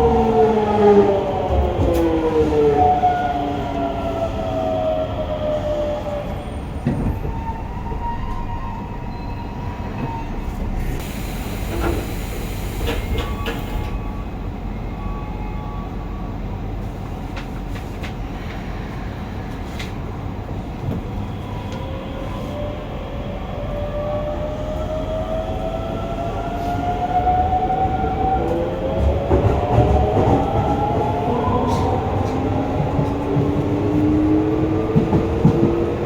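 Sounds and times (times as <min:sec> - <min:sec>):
train inverter whine: 0:00.0 - 0:16.7
rail clicks: 0:09.6 - 0:14.2, 0:28.4 - 0:36.0.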